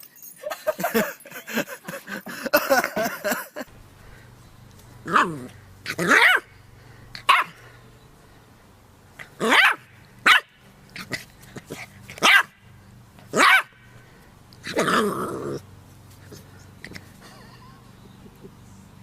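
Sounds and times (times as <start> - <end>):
dog barking: 6.1 - 6.4, 7.2 - 7.6, 9.4 - 10.5, 12.2 - 12.6, 13.4 - 13.7.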